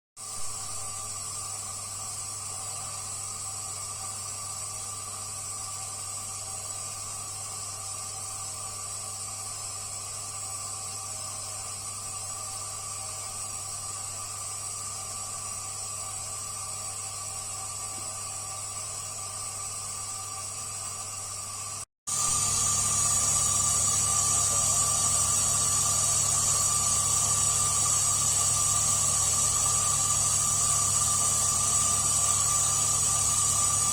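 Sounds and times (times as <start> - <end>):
heater fan humming and whining: 19.6 - 33.9
hiss: 22.1 - 33.9.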